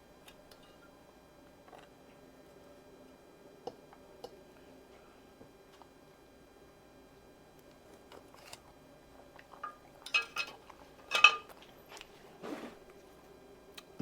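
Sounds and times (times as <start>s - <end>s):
utensils clinking on plate: 9.5s - 11.6s.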